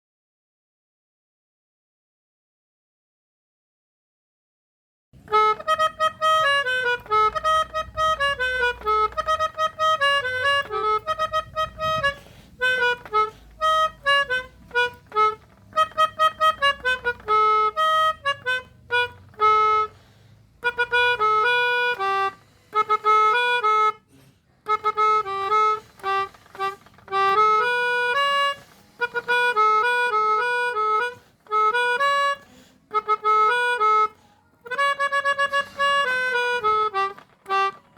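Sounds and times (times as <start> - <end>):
melodica playing quick melody: 5.2 - 37.9.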